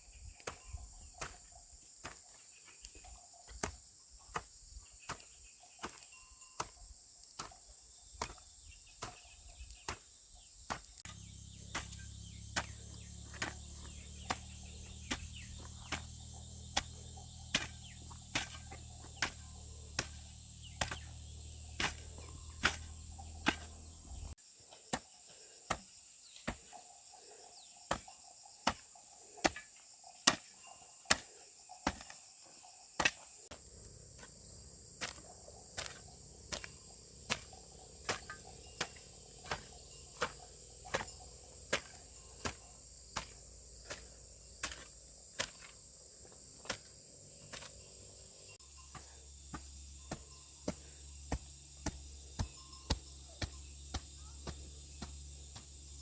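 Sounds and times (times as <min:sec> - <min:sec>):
crickets chirping: 0:00.0 - 0:56.0
sharp tool strikes: 0:10.7 - 0:24.2, 0:33.0 - 0:33.4, 0:35.0 - 0:42.6.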